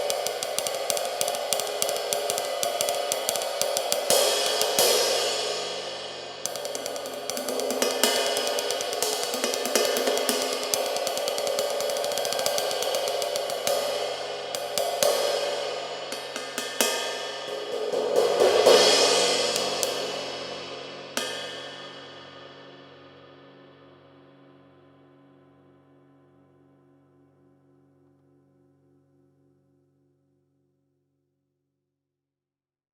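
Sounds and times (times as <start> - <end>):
ride cymbal struck repeatedly: 0.0 - 22.9.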